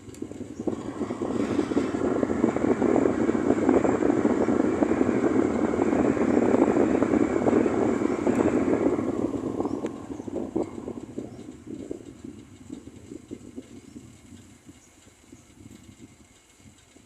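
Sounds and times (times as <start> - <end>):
wind gust rushing: 0.0 - 14.7.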